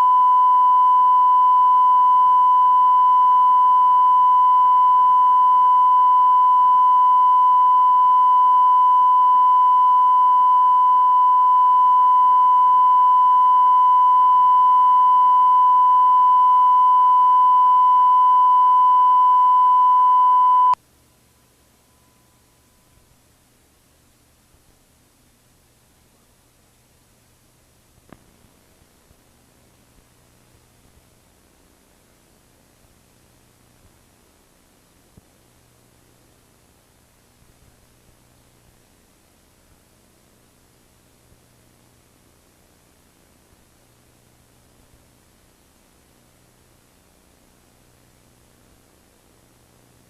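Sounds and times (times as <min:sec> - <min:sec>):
steady test tone: 0:00.0 - 0:20.8
faint tape hiss: 0:00.0 - 0:50.0.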